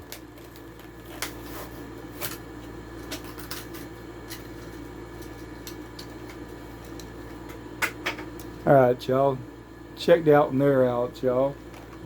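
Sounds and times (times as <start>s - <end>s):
plastic packaging clicks and crinkles: 0.0s - 7.2s.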